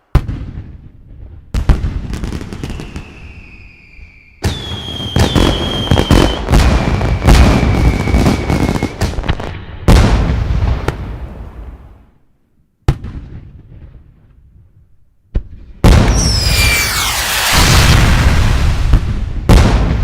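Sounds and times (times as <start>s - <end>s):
fireworks bursting and crackling: 0.0s - 11.9s, 15.4s - 20.0s
fireworks whistling: 2.2s - 9.2s, 15.9s - 19.6s
fireworks banging: 4.4s - 11.2s, 15.8s - 20.0s.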